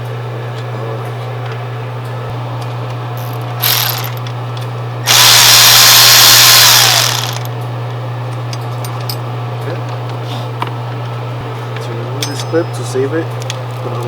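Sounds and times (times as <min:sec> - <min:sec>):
power tool whining: 0:03.2 - 0:04.2, 0:05.1 - 0:07.5.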